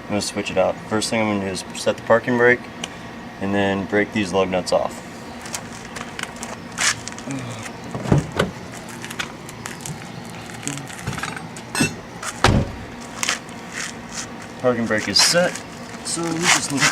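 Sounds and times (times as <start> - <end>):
heavy thumps: 11.0 - 12.9.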